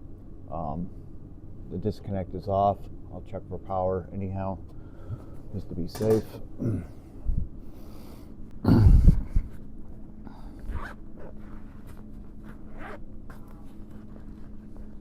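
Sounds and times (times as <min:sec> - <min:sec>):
steady low hum: 0:00.0 - 0:15.0
zipper pulled: 0:10.6 - 0:14.6.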